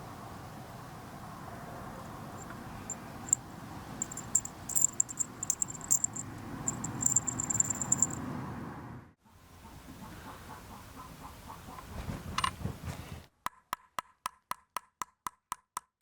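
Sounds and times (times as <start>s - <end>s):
steady low hum: 0.0s - 8.2s.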